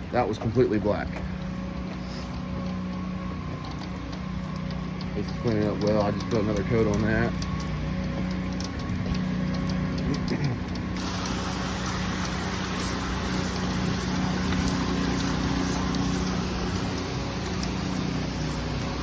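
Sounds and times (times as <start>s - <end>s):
small gas engine running: 1.1s - 19.0s
hose spraying hiss: 11.0s - 19.0s.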